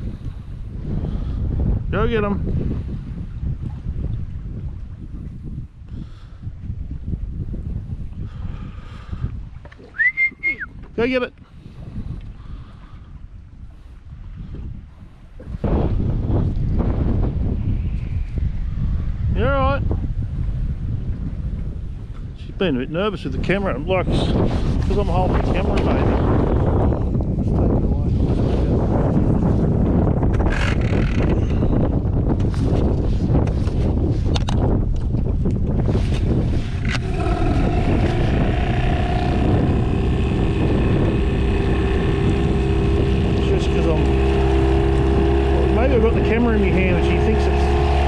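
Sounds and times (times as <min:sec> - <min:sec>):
wind buffeting microphone: 0:00.0 - 0:48.0
small boat motor running: 0:36.2 - 0:48.0
steady engine whine: 0:36.8 - 0:48.0.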